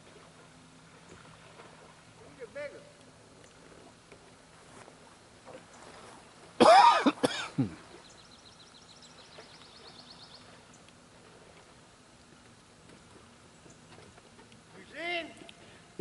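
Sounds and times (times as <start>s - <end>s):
man coughing: 6.6s - 7.8s.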